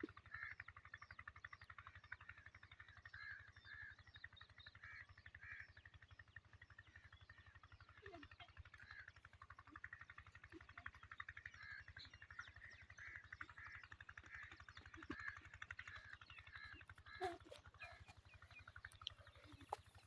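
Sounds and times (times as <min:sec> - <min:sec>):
faint birds twittering: 0:00.0 - 0:20.0
low animal calls: 0:13.3 - 0:20.0.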